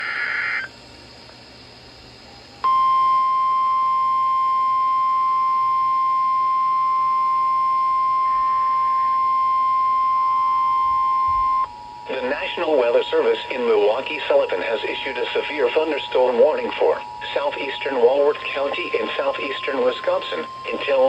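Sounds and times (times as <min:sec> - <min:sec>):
loud steady alarm beep: 0:02.6 - 0:21.0.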